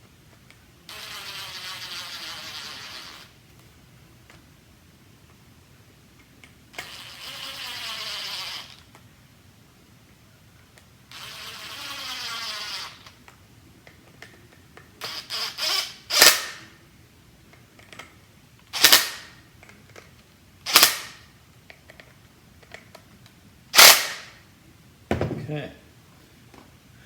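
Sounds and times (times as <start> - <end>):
battery screwdriver whirring: 15.0 - 16.7, 18.8 - 19.3, 20.7 - 21.2, 23.8 - 24.3
sharp knocks: 25.1 - 25.6.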